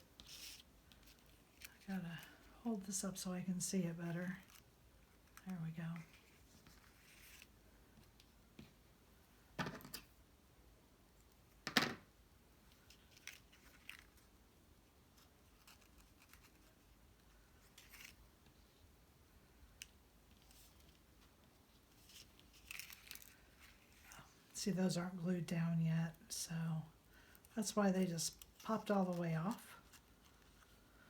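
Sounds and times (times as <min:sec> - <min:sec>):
paper rustling: 0:15.2 - 0:18.2, 0:20.3 - 0:24.1.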